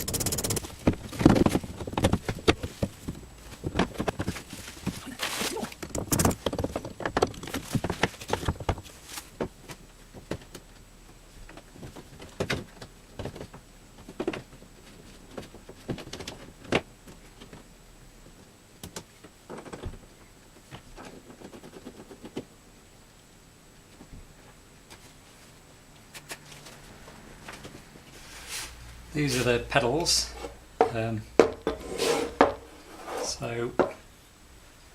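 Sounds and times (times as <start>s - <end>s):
car parts clicking and knocking: 5.8s - 10.7s.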